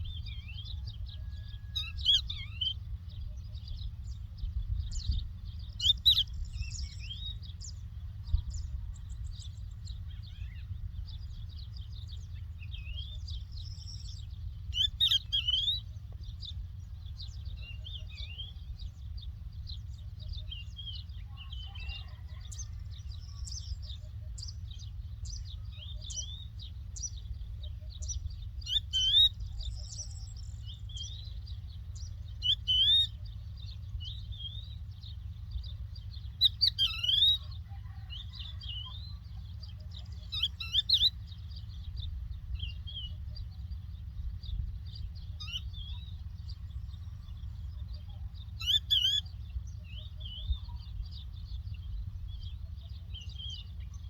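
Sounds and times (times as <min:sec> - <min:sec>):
larks chirping and twittering: 0:00.0 - 0:54.0
steady low rumble: 0:00.0 - 0:54.0
rising whistled bird phrases: 0:14.8 - 0:15.8, 0:28.6 - 0:31.2, 0:32.4 - 0:33.2, 0:36.4 - 0:37.5, 0:40.1 - 0:41.2, 0:45.4 - 0:46.1, 0:48.6 - 0:50.8.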